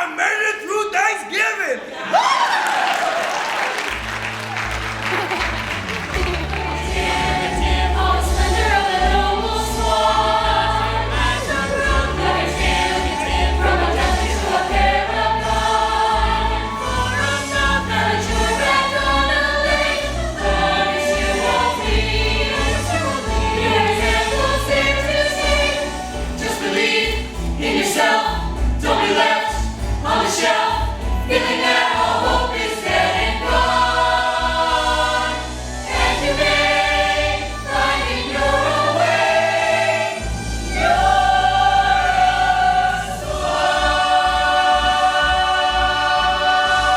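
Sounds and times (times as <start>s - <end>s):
instrumental accompaniment with bass: 3.9s - 46.9s.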